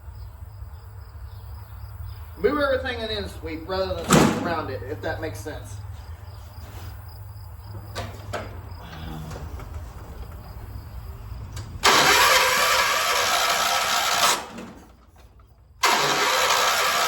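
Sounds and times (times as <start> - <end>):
engine starter grinding crank: 7.8 - 17.0.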